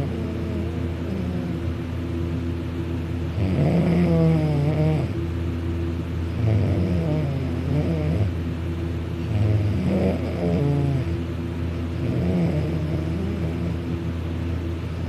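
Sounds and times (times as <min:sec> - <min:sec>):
steady low hum: 0:00.0 - 0:15.0
man snoring loudly: 0:03.4 - 0:05.1, 0:06.4 - 0:08.3, 0:09.3 - 0:11.1, 0:12.0 - 0:13.8.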